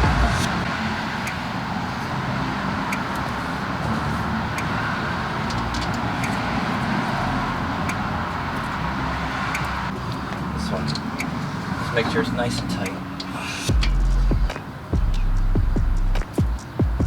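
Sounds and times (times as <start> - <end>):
steady background noise: 0.0 - 17.0
metallic clicks of wheel bolts: 2.8 - 3.4, 5.4 - 7.2, 7.8 - 15.2.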